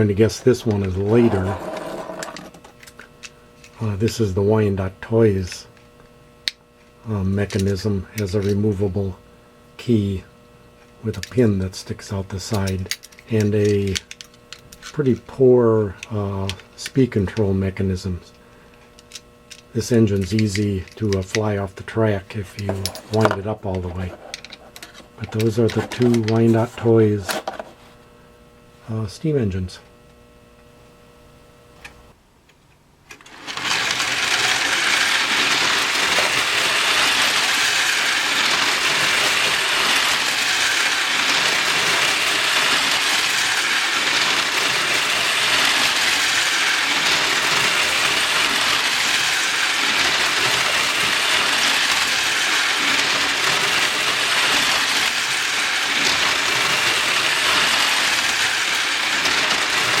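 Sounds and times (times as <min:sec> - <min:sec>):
wind-up toy train whirring rattle: 0:00.0 - 0:03.0, 0:33.2 - 1:00.0.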